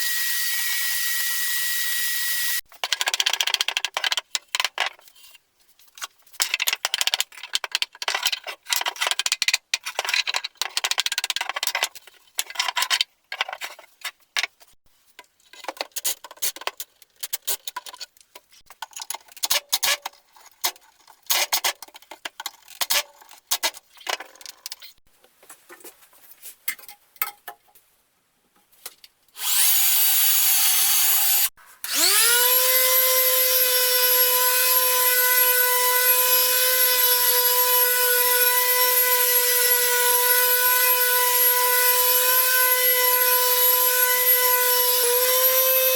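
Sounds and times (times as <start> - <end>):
power tool motor whining: 0.0 - 2.6, 29.4 - 45.9.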